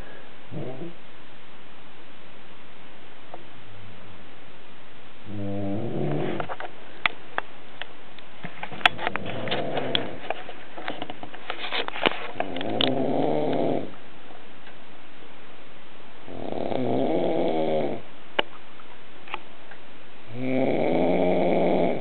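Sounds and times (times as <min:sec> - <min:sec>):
person snoring loudly: 0:00.5 - 0:01.0, 0:05.3 - 0:06.4, 0:12.4 - 0:14.0, 0:16.3 - 0:18.0, 0:20.3 - 0:22.0.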